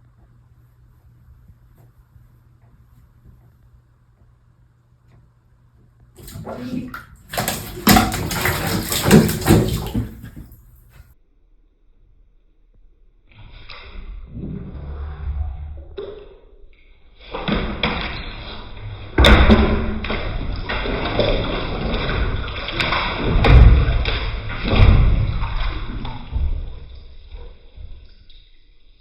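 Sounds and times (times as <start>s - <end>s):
cat scrambling in a bathtub: 6.2s - 10.9s, 17.3s - 27.5s
heavy thumps and knocks: 7.3s - 10.6s.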